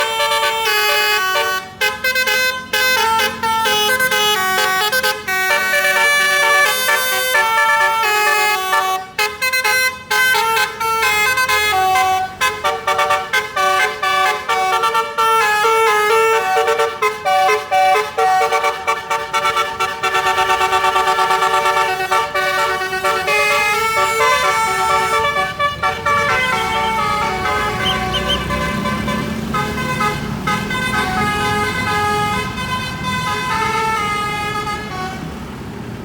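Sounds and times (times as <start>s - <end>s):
multi-tone bus horn melody: 0.0s - 35.5s
short horn toots: 18.4s - 32.4s.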